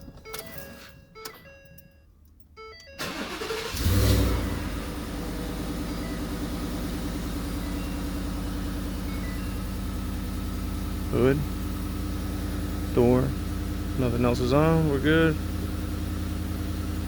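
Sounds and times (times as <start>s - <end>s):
warning chimes beeping: 0.0s - 11.6s, 14.0s - 15.4s
truck engine revving and idling: 3.0s - 17.0s.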